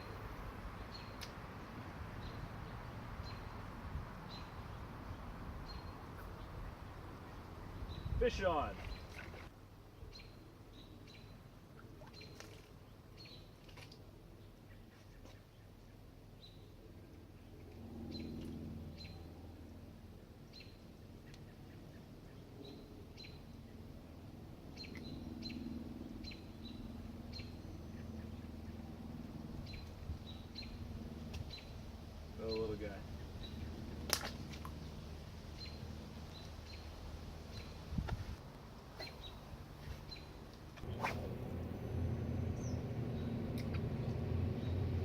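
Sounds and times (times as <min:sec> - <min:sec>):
faint low rumble: 0:32.9 - 0:45.0
small bird chirping: 0:39.0 - 0:43.8.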